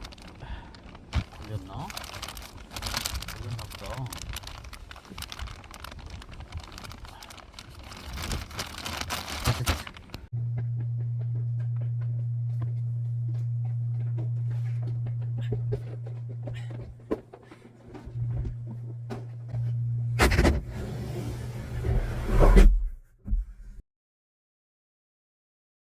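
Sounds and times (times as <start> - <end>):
low machine hum: 8.6 - 23.8.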